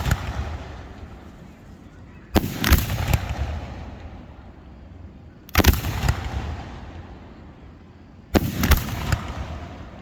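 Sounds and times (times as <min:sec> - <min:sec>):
firework bangs: 0:00.0 - 0:01.4, 0:02.4 - 0:04.2, 0:05.5 - 0:07.0, 0:08.3 - 0:10.0.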